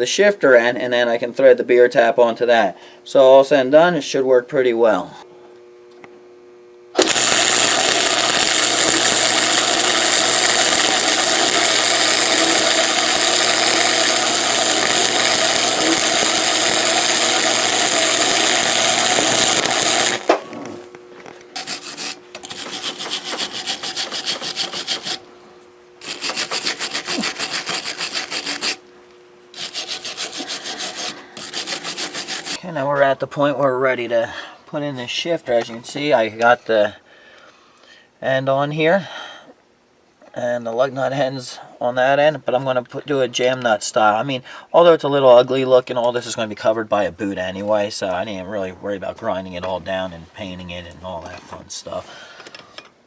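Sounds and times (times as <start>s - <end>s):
power tool grinding metal: 7.0s - 20.3s, 21.6s - 25.2s, 26.0s - 28.8s, 29.6s - 32.6s
welding crackling bursts: 7.0s - 20.4s, 21.6s - 25.2s, 26.0s - 28.8s, 29.6s - 32.6s.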